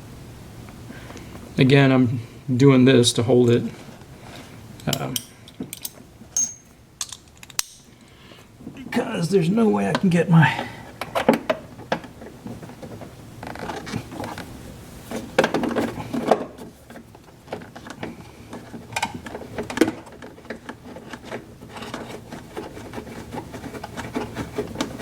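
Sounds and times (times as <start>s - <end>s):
tools and parts clicking and knocking: 4.8s - 7.9s.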